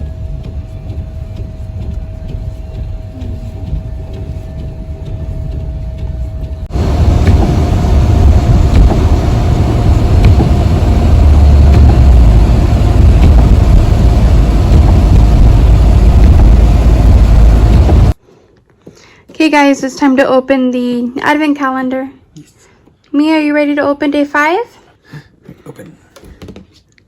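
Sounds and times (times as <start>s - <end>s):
faint steady hum: 0.0s - 18.2s
car rumbling on the move: 4.4s - 18.2s.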